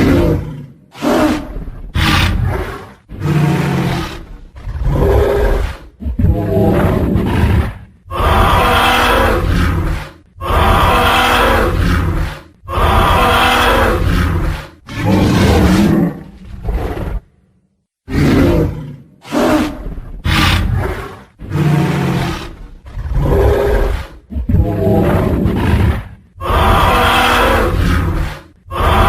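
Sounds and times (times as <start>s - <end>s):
dinosaur roars: 0.0s - 17.3s, 18.1s - 29.0s.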